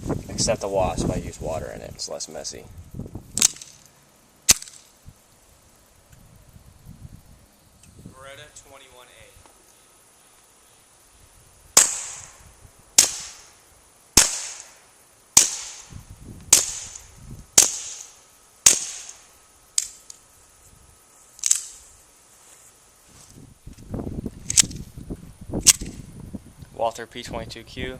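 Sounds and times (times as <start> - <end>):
suppressed pistol shots: 4.5 - 4.8, 11.8 - 12.4, 14.2 - 14.8, 15.4 - 15.9, 17.6 - 19.2.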